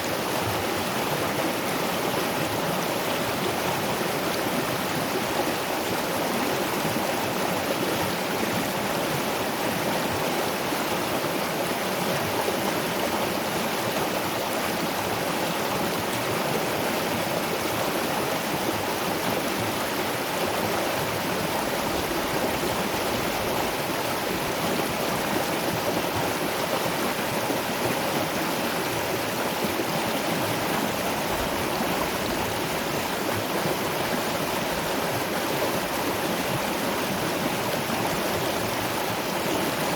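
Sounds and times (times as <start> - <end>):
waterfall and river rushing: 0.0 - 39.9.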